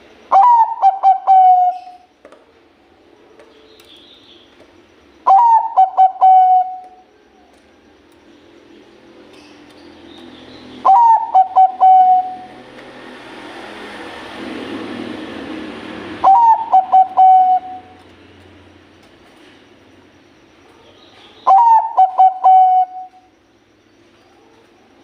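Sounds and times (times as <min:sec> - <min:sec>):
dove cooing: 0:00.3 - 0:02.1, 0:05.3 - 0:07.0, 0:10.8 - 0:12.6, 0:16.2 - 0:18.0, 0:20.9 - 0:23.3.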